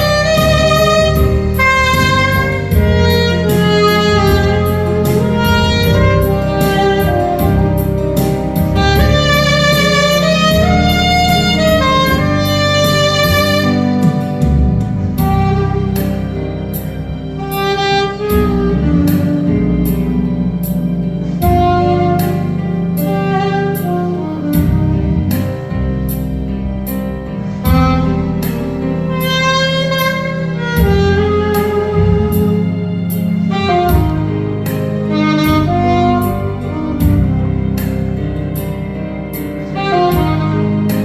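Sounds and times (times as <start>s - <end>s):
backing music with steady beat: 0.0s - 41.0s
saxophone melody: 0.0s - 41.0s.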